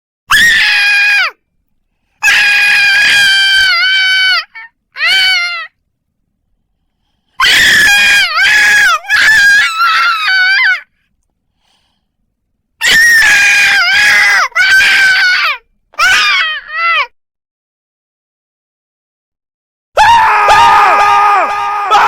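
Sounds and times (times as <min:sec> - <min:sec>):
person screaming: 0:02.2 - 0:05.7, 0:20.0 - 0:22.0.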